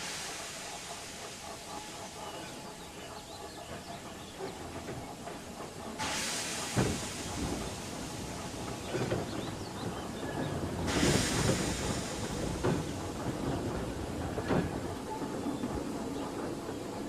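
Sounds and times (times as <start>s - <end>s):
gush of steam: 0.0s - 4.0s, 5.5s - 15.0s
steam locomotive hissing steam: 0.0s - 17.0s.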